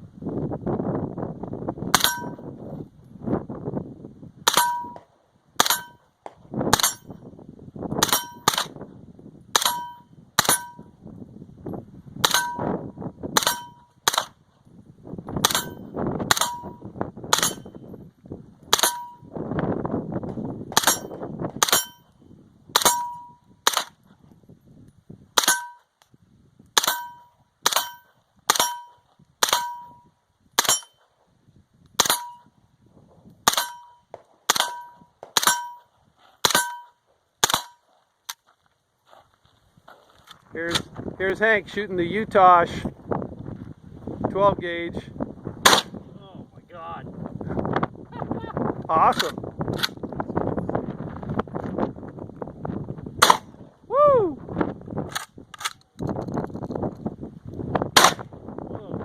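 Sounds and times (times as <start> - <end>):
steel target ringing: 2.0 - 2.5, 4.5 - 5.0, 5.6 - 6.1, 6.8 - 7.2, 8.0 - 8.5, 9.6 - 10.9, 12.2 - 12.8, 13.4 - 13.9, 18.7 - 19.3, 20.8 - 22.2, 22.8 - 23.5, 25.4 - 25.9, 26.8 - 31.0, 32.0 - 32.5, 33.5 - 35.9, 36.5 - 37.0
single gunshots: 13.4 - 14.4, 37.4 - 37.8, 45.6 - 46.0, 53.2 - 53.5, 58.0 - 58.3.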